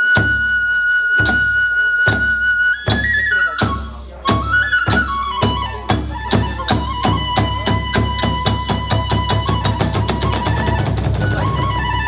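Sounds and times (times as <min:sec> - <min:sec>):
bamboo flute melody: 0:00.0 - 0:12.0
drum strokes: 0:00.0 - 0:12.0.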